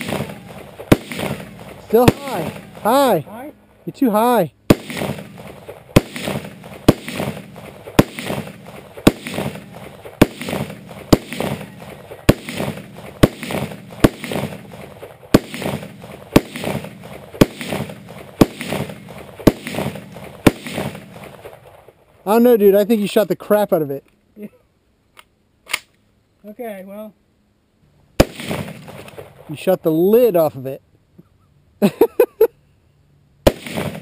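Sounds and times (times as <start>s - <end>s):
gunshots with echo: 0.0s - 3.2s, 4.7s - 21.5s, 28.2s - 29.3s, 33.5s - 34.0s.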